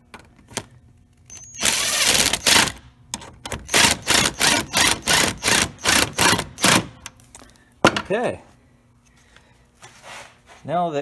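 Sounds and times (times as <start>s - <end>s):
ratchet wrench clicking: 3.7s - 7.1s.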